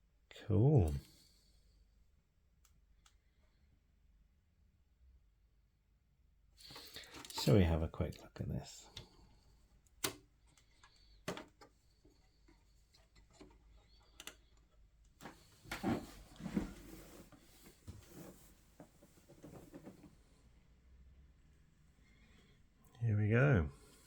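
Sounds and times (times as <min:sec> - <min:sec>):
hardware clicks and taps: 0:09.8 - 0:15.4.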